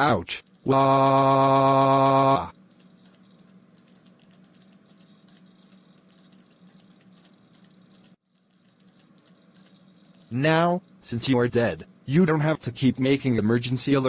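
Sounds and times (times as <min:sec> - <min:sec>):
faint keyboard typing: 0:02.5 - 0:10.6.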